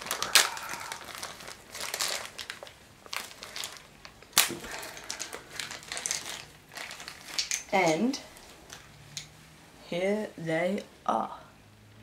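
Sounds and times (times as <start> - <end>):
packaging crinkling: 0.0 - 8.8.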